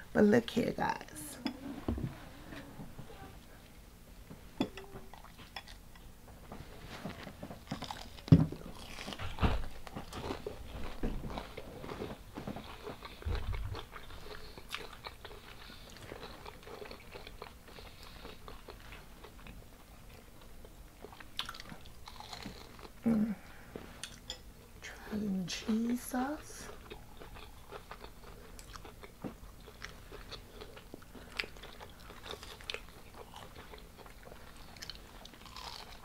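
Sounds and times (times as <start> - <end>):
crunchy biting and chewing: 7.6 - 20.2, 21.0 - 23.0, 26.7 - 36.0.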